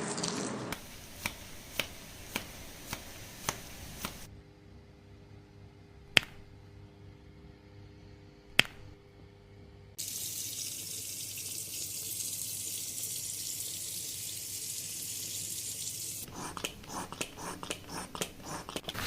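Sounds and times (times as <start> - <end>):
tap water running: 10.0 - 19.0.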